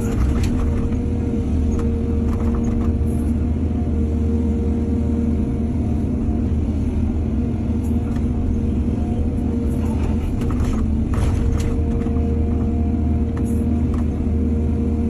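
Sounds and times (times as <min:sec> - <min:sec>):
excavator diesel engine running: 0:00.0 - 0:15.0
short knocks and clatter: 0:09.9 - 0:12.2.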